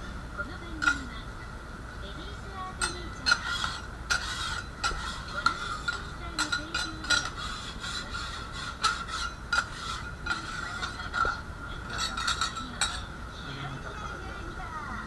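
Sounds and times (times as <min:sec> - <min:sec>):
steady background tone: 0:00.0 - 0:15.0
metal spatulas scraping griddle: 0:00.8 - 0:01.2, 0:02.8 - 0:13.2.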